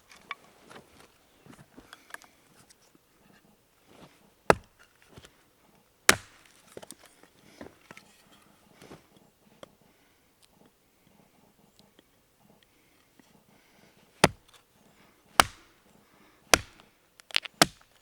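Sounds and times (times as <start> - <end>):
chopping strikes on wood: 4.5 - 4.8, 6.1 - 6.5, 14.2 - 14.4, 15.4 - 15.7, 16.5 - 16.8, 17.6 - 17.9.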